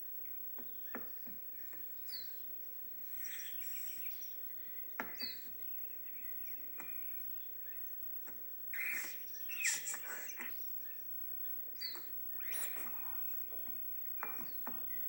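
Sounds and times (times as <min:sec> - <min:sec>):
birds chirping: 0:00.0 - 0:15.0
faint steady background noise: 0:00.0 - 0:15.0.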